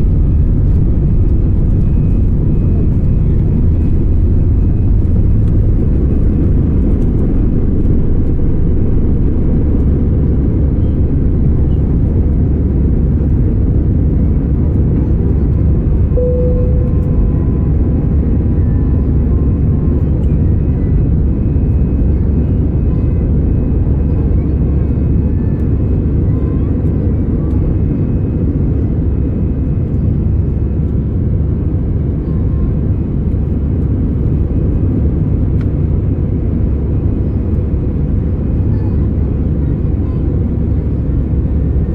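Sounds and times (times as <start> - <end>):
aircraft cabin engine rumble: 0.0 - 41.9
brief thin tone: 16.2 - 17.7.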